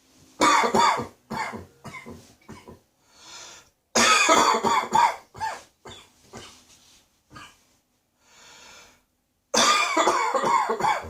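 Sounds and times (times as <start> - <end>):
person coughing: 0.4 - 2.8, 4.0 - 6.6, 9.6 - 11.0.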